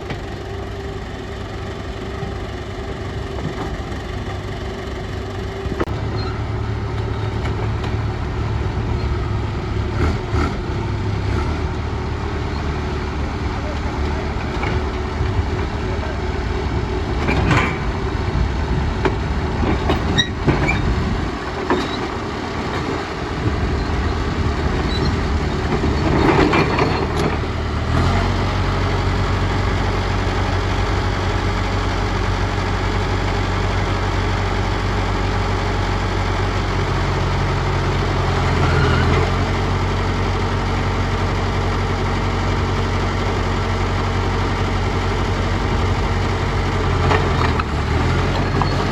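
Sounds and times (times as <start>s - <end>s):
heavy diesel machinery running: 0.0s - 48.9s
metal clanks and knocks: 19.0s - 27.6s.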